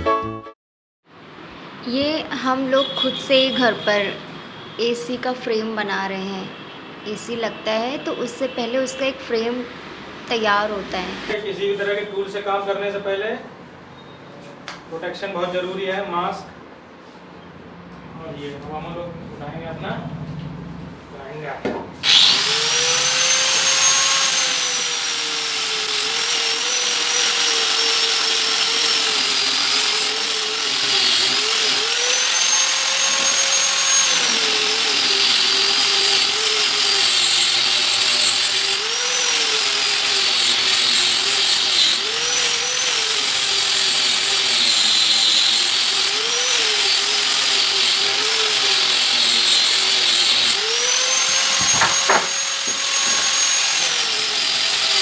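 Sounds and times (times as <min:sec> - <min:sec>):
power tool motor whine: 0:22.0 - 0:55.0.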